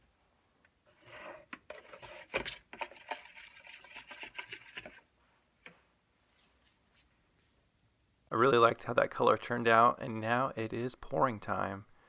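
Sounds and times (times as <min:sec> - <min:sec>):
stir stick scraping cup: 0:00.9 - 0:05.0.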